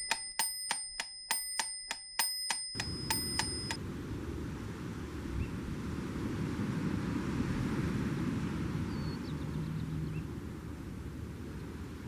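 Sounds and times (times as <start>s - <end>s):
bell-like ringing: 0.0s - 3.8s
rapid metallic clicking: 0.0s - 3.8s
low steady rumbling: 2.8s - 12.0s.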